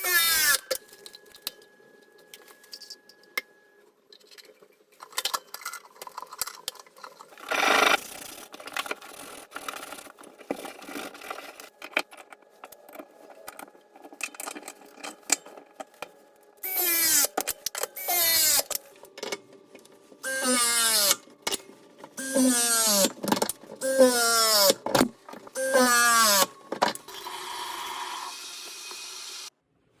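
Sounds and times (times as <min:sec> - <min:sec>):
tools clicking and rattling: 0:04.1 - 0:16.1.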